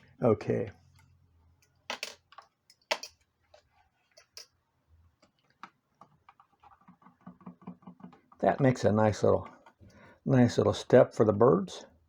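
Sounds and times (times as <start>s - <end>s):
clicks of handling small hard parts: 0.9s - 3.3s.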